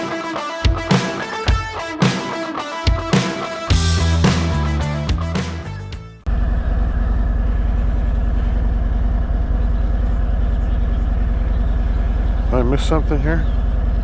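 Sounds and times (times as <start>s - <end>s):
guitar music: 0.0s - 6.2s
motorcycle engine running: 2.9s - 14.0s.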